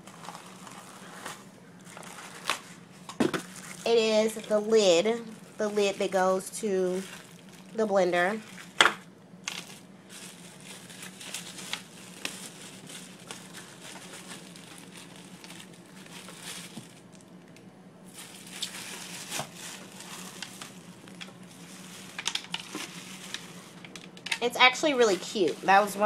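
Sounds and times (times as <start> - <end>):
faint low hum: 0.0 - 26.0
packaging crinkling and rustling: 0.0 - 26.0.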